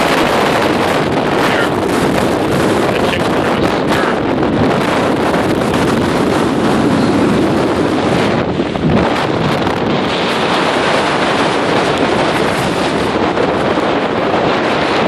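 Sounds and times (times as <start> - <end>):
strong wind buffeting microphone: 0.0 - 15.0.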